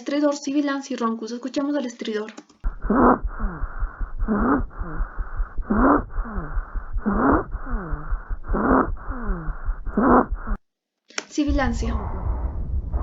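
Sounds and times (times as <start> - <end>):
harsh stridor breath sounds: 2.7 - 10.6.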